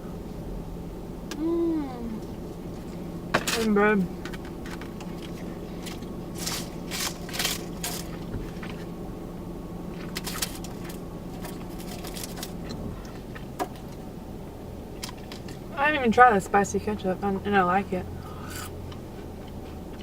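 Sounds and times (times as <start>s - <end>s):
steady low hum: 0.0s - 20.0s
crunching and crinkling: 2.9s - 9.0s, 9.9s - 14.0s.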